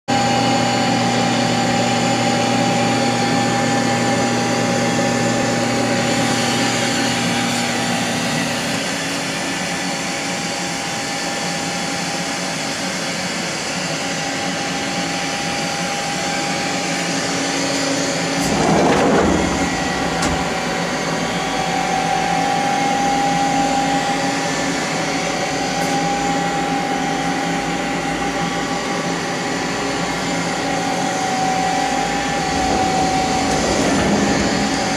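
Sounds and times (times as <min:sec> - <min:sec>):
lathe hum and whine: 0:00.1 - 0:34.9
brief loud rushing noise: 0:32.1 - 0:34.9.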